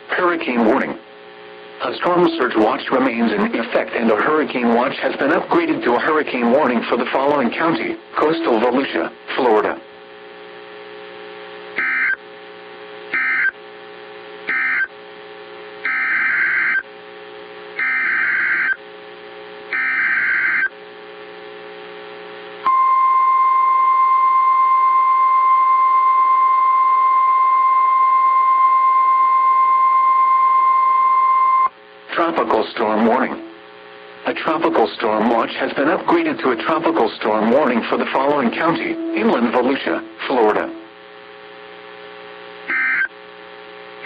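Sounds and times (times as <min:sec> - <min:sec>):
steady low hum: 0:00.0 - 0:22.7, 0:28.4 - 0:44.0
single-pitch alert tone: 0:38.5 - 0:40.9.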